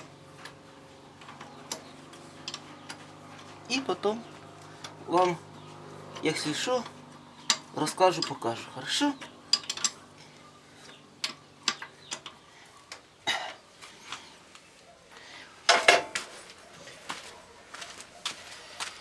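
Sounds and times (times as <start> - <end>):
metal tools clinking: 0.4 - 12.4.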